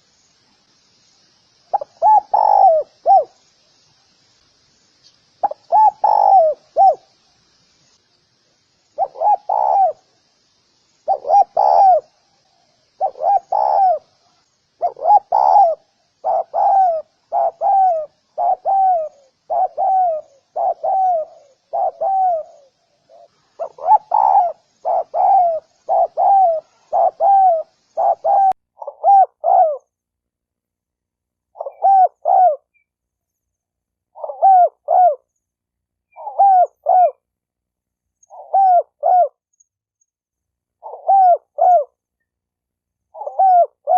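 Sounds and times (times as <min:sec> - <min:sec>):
dove cooing: 0:01.7 - 0:03.4, 0:05.4 - 0:07.1, 0:09.0 - 0:10.1, 0:11.0 - 0:12.2, 0:12.8 - 0:29.9, 0:31.5 - 0:32.8, 0:34.1 - 0:35.3, 0:36.1 - 0:37.2, 0:38.3 - 0:39.4, 0:40.8 - 0:42.0, 0:43.1 - 0:43.9.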